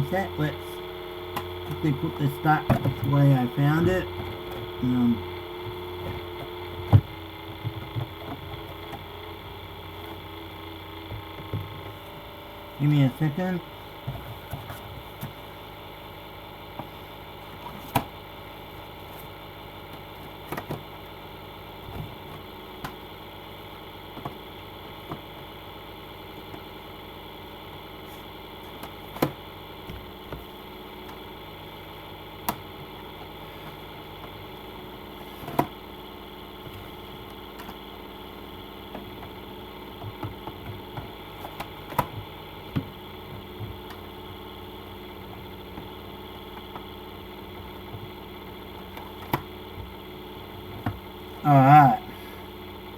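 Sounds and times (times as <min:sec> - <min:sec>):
steady mechanical hum: 0:00.0 - 0:52.9
plastic cases clicking and knocking: 0:05.7 - 0:09.1, 0:19.9 - 0:21.0, 0:35.4 - 0:35.8, 0:38.9 - 0:44.0.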